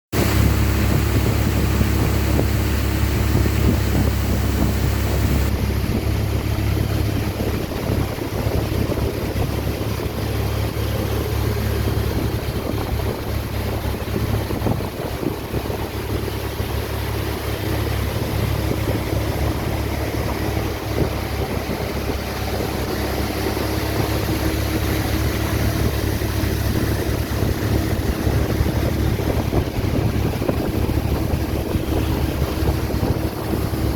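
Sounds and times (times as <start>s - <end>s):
motorboat engine running: 0.1s - 33.9s
wind buffeting microphone: 0.2s - 11.1s, 11.8s - 33.9s.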